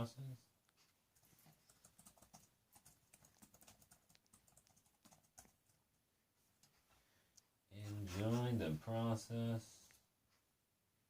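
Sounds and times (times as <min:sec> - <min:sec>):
faint small clicks and rustles: 0:00.6 - 0:07.5.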